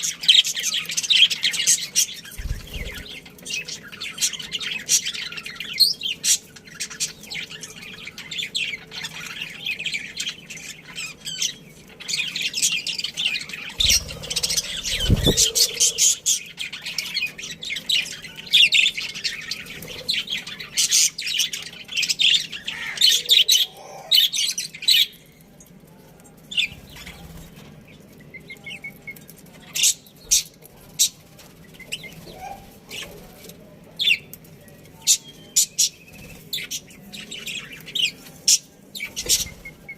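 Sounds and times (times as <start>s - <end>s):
budgerigars chirping: 13.4s - 17.4s.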